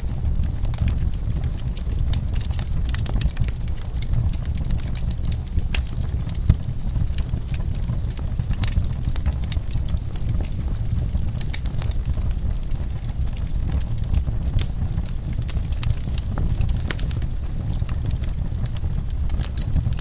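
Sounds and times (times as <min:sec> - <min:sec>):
fire crackling and popping: 0:00.0 - 0:20.0.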